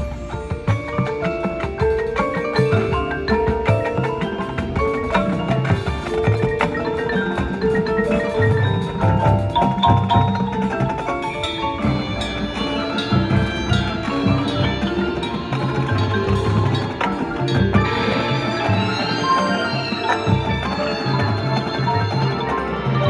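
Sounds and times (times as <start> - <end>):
marching band playing: 0.0 - 23.0
marimbas and glockenspiel: 0.0 - 23.0.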